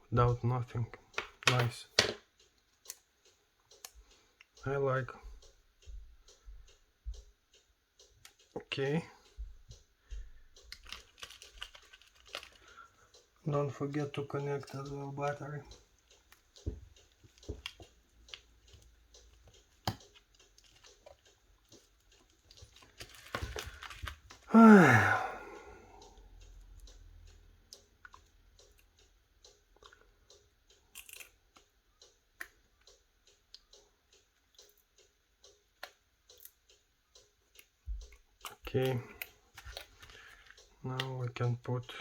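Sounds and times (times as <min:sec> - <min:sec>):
small parts clicking and tapping: 0:01.0 - 0:24.5, 0:25.6 - 0:42.0.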